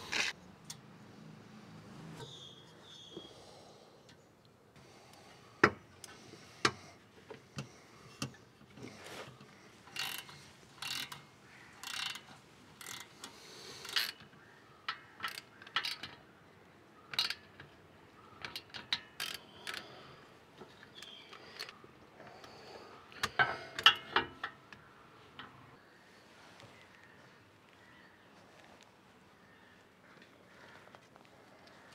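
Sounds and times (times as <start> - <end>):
small parts clicking and clattering: 7.6 - 16.3, 17.1 - 17.8, 18.4 - 19.9, 20.6 - 21.8, 23.1 - 24.6.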